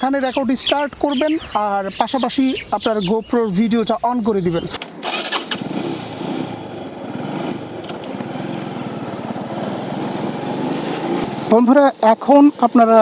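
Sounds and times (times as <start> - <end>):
motorcycle engine running: 4.9 - 13.0.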